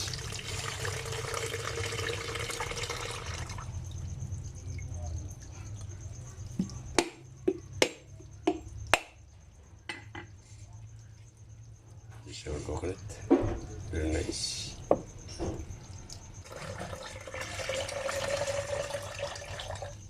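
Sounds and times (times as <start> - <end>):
coconut water trickling: 0.0 - 8.9, 13.8 - 20.0
sharp knocks: 6.6 - 9.2.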